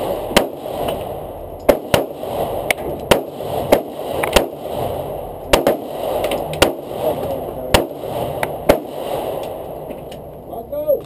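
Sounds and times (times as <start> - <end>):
steady background noise: 0.0 - 11.0
handgun shots: 1.6 - 4.6, 5.5 - 6.9.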